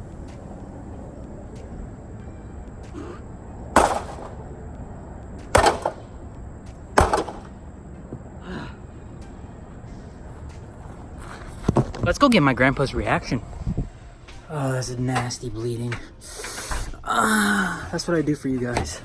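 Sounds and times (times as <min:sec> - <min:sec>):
hard impacts on microwave: 0:03.8 - 0:04.4, 0:05.5 - 0:06.1, 0:07.0 - 0:07.6.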